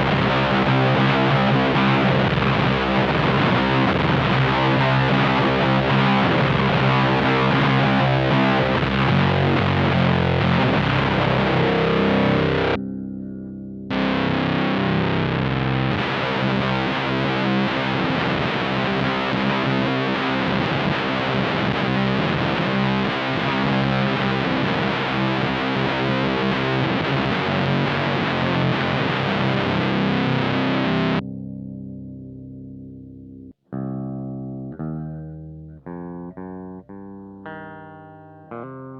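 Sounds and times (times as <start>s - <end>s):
electric guitar fuzz riff: 0.0s - 38.9s.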